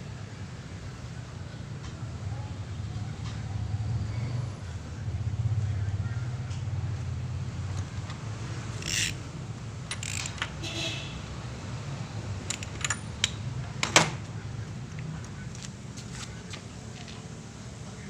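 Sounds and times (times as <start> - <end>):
metallic clicks and clinks: 8.8 - 9.2, 9.9 - 10.7, 12.4 - 14.3.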